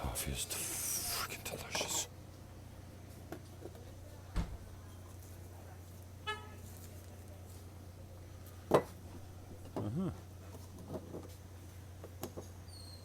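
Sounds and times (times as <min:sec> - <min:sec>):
steady low hum: 0:00.0 - 0:03.2.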